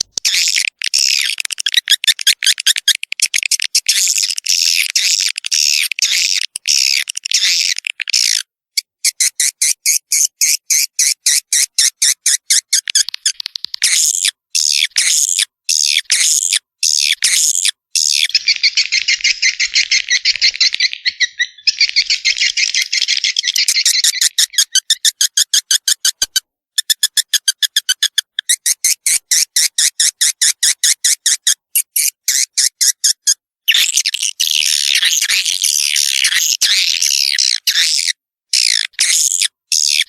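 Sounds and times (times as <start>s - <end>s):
swiftlet chirps and twittering: 9.1s - 26.2s.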